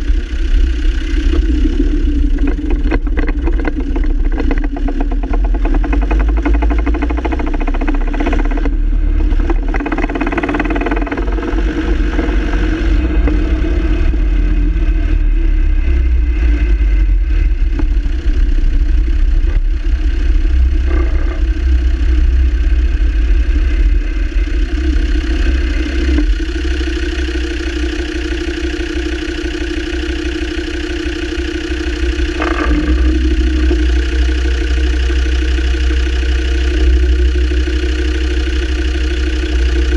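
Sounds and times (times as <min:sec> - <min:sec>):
diesel engine running: 0:00.0 - 0:39.9
rattling clatter: 0:01.1 - 0:14.2, 0:31.2 - 0:37.4.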